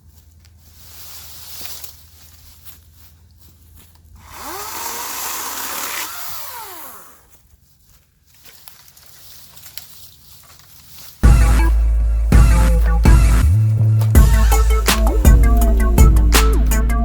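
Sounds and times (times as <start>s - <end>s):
electric chainsaw motor whine: 4.2s - 7.4s.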